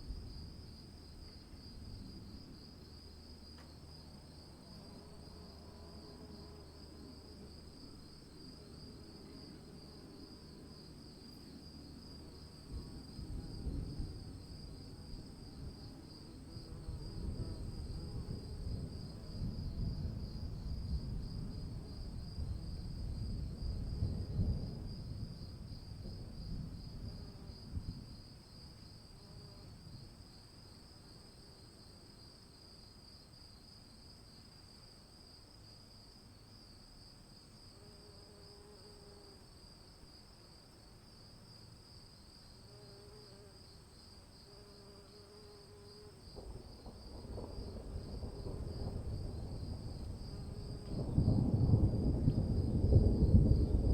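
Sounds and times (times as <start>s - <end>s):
crickets chirping: 0.0s - 53.9s
distant thunder rumbling: 46.4s - 53.9s.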